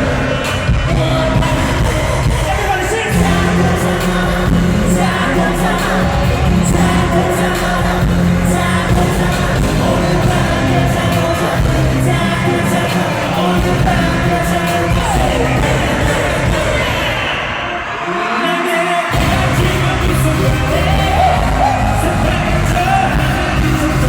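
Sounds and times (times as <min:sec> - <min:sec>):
heavy bass line: 0:00.0 - 0:17.3, 0:19.1 - 0:24.0
live pop music with singing: 0:00.0 - 0:24.0.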